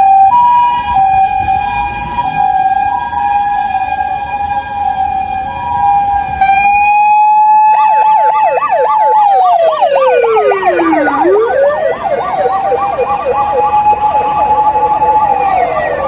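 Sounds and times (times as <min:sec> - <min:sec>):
motor siren wailing: 0:00.0 - 0:16.0
electronic siren yelping: 0:06.4 - 0:16.0.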